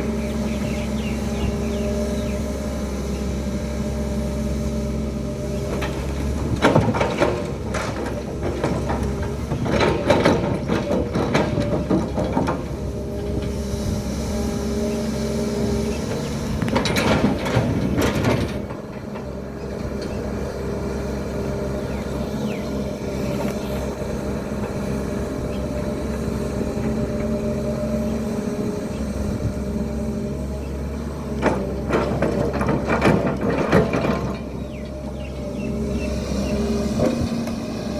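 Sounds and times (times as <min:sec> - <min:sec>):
excavator diesel engine: 0:00.0 - 0:37.9.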